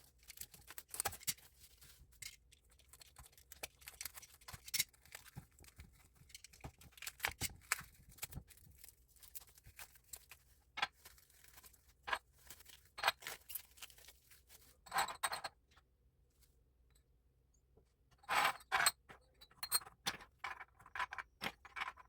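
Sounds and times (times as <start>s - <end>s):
rustling: 0.1s - 14.8s
packaging crinkling: 6.4s - 14.7s.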